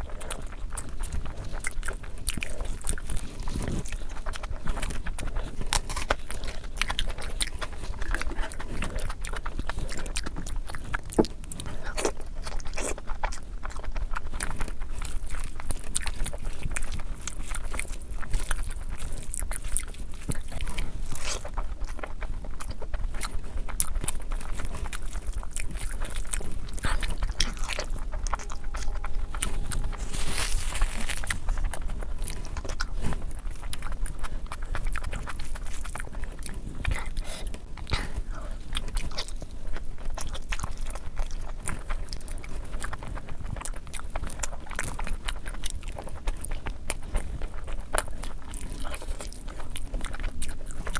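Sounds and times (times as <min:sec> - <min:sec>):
person chewing food: 0:00.0 - 0:50.9.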